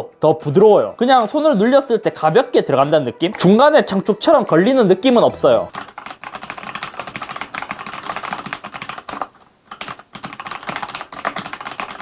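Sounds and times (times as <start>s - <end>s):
rapid typing on mechanical keyboard: 5.7s - 12.0s.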